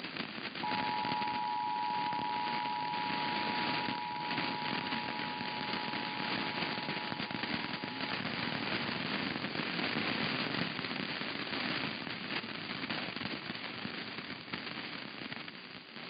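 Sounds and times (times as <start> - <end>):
radio static crackling: 0.3 - 11.2
two-tone alert signal: 0.6 - 8.2.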